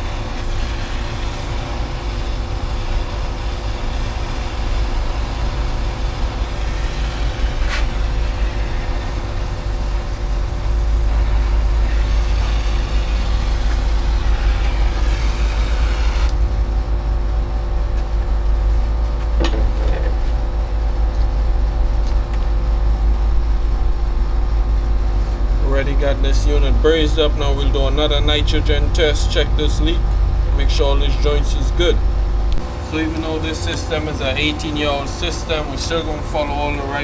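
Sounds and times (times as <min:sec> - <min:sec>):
machinery rumbling and humming: 0:00.0 - 0:37.0
hiss: 0:02.8 - 0:09.3.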